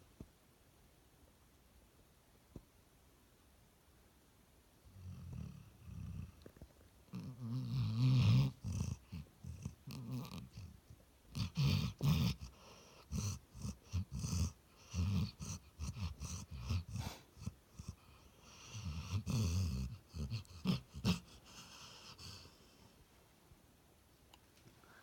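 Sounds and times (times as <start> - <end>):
dog snoring: 4.9 - 22.9.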